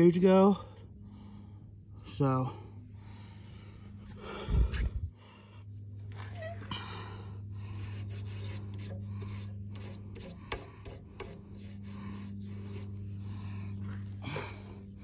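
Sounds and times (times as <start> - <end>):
steady low hum: 0.0 - 15.0
rubbing strokes: 7.7 - 14.2.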